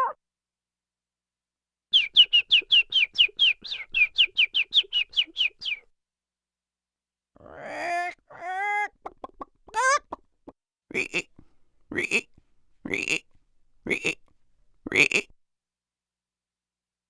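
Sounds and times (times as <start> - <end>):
cartoon bird tweets: 1.9 - 5.8.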